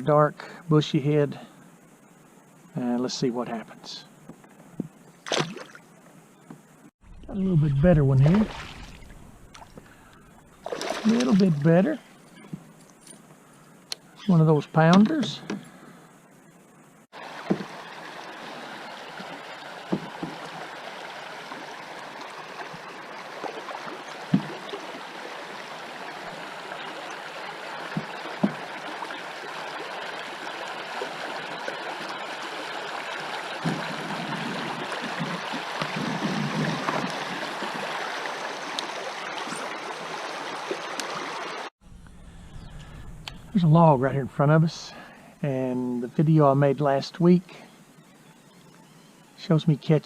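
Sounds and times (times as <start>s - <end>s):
water current rushing: 7.0s - 12.0s, 17.1s - 41.7s.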